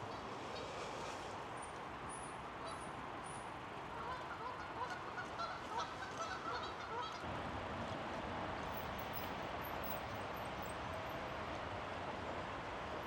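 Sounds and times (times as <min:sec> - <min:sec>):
waterfowl honking: 0:04.0 - 0:07.2.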